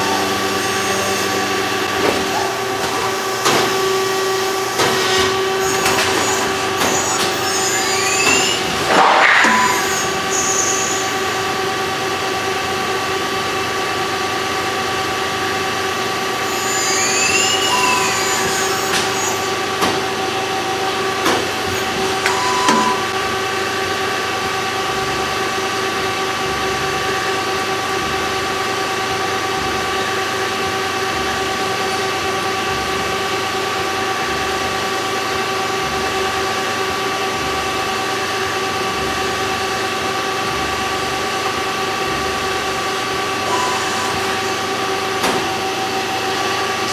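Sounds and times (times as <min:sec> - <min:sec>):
machine tool whine and hum: 0:00.0 - 0:46.9.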